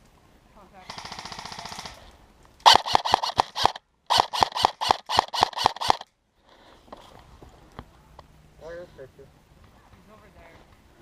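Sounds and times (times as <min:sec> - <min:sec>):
airsoft guns firing: 0:00.9 - 0:06.1.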